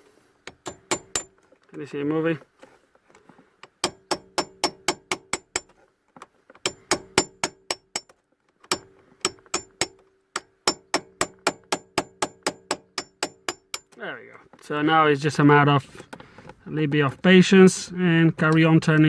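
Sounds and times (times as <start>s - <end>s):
hammer tapping on metal bolt: 0.5s - 1.4s, 3.6s - 5.7s, 6.6s - 14.0s.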